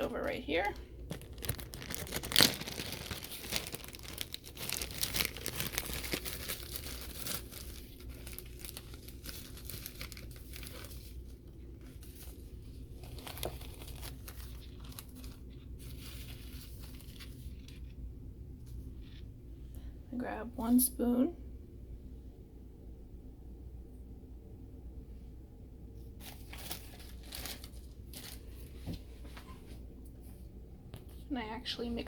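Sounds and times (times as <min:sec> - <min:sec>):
packaging crinkling and rustling: 0:00.0 - 0:18.0, 0:26.2 - 0:29.8.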